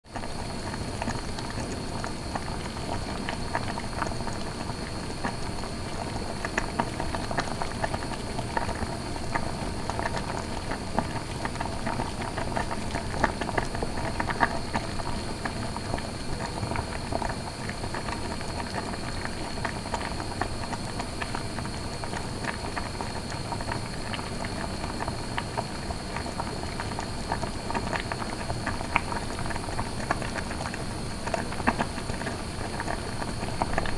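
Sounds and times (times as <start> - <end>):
food boiling in a pot: 0.0 - 33.9.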